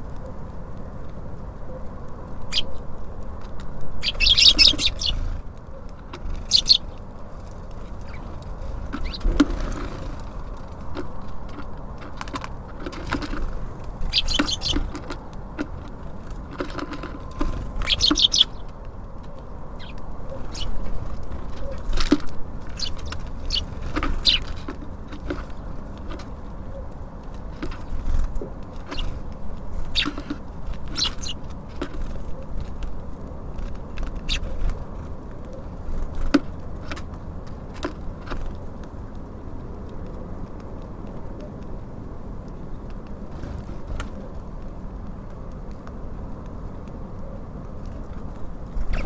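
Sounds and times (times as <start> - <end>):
distant traffic rumble: 0.0 - 49.0
small birds chirping: 1.0 - 38.7, 47.7 - 49.0
birds pecking on feeder: 2.0 - 41.8, 42.4 - 49.0.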